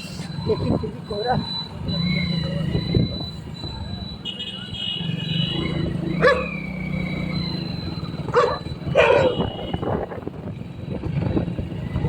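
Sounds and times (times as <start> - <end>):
dog barking: 6.2 - 6.6, 8.3 - 9.5.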